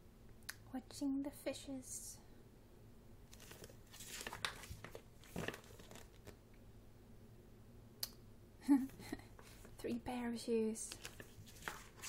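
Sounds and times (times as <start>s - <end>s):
paper pages turning: 3.3s - 6.4s, 10.9s - 12.0s.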